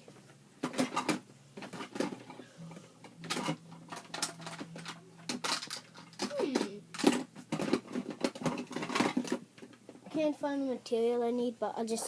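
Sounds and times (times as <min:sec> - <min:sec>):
faint low hum: 0:00.0 - 0:12.0
plastic tools clicking and clattering: 0:00.6 - 0:02.4, 0:03.2 - 0:09.8.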